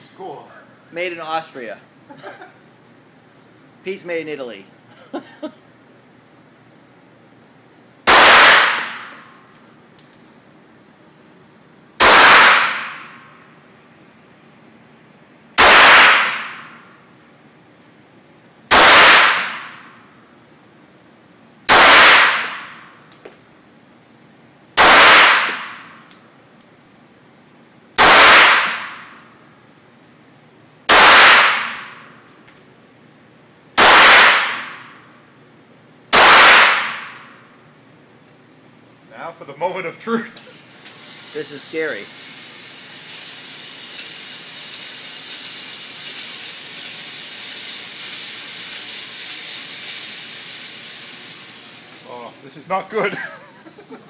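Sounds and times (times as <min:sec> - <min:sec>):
pistol shots: 0:08.1 - 0:09.1, 0:12.0 - 0:13.1, 0:15.6 - 0:16.6, 0:18.7 - 0:19.8, 0:21.7 - 0:22.8, 0:24.8 - 0:25.8, 0:28.0 - 0:29.0, 0:30.9 - 0:32.0, 0:33.8 - 0:34.8, 0:36.1 - 0:37.2.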